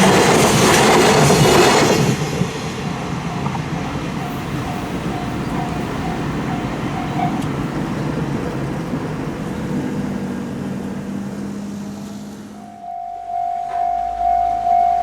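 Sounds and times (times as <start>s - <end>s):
train rolling past: 0.0s - 15.0s
level-crossing warning bell: 2.9s - 8.0s, 12.5s - 15.0s.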